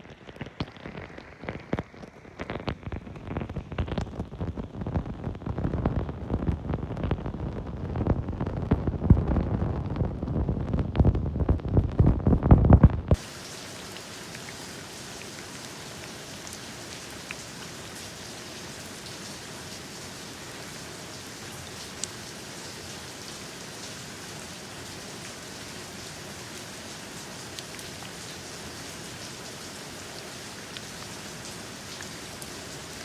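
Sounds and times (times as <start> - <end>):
steady rain falling: 0.0 - 33.0
single raindrops ticking: 13.1 - 17.8.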